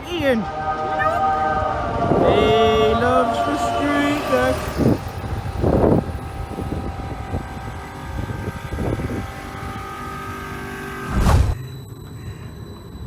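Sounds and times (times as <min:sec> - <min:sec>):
faint steady whine: 0:00.0 - 0:13.0
tram running: 0:00.0 - 0:13.0.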